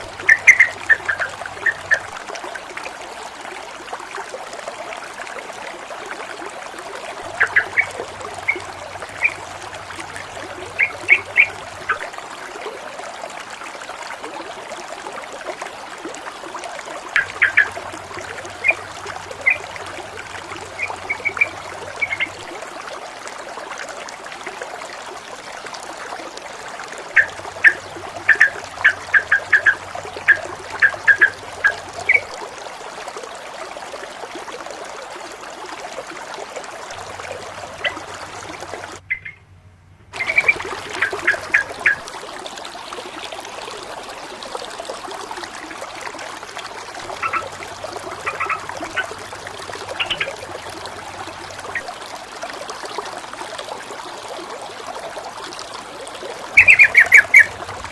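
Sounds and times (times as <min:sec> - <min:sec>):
water trickling and splashing: 0:00.0 - 0:57.9
bird chirping: 0:00.2 - 0:02.0, 0:10.8 - 0:12.0, 0:39.0 - 0:39.5, 0:40.2 - 0:42.0, 0:56.6 - 0:57.6.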